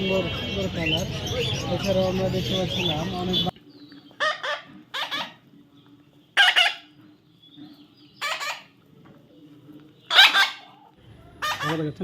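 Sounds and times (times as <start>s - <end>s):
parrots squawking: 0.0s - 3.5s, 4.1s - 5.6s, 6.3s - 8.9s, 10.0s - 12.0s.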